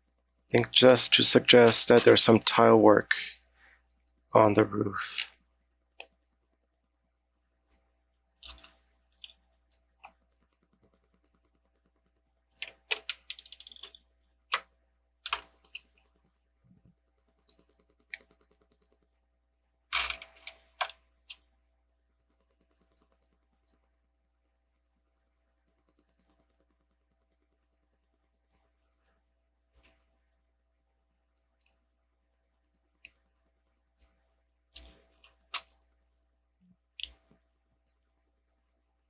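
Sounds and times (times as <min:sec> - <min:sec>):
plastic bricks clicking: 0:12.6 - 0:14.7.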